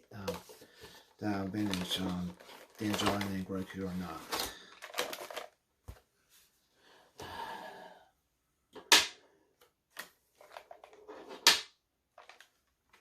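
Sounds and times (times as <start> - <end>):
plastic and cardboard rustling: 0.0 - 6.6, 9.9 - 11.5, 12.1 - 13.0
sharp plastic snaps: 8.8 - 9.2.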